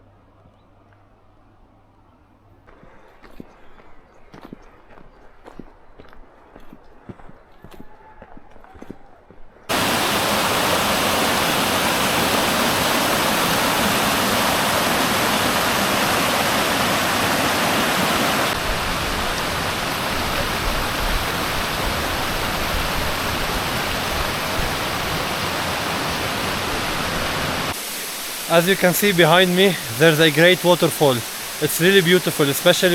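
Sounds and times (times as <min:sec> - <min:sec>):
waterfall rushing: 0:09.7 - 0:32.9.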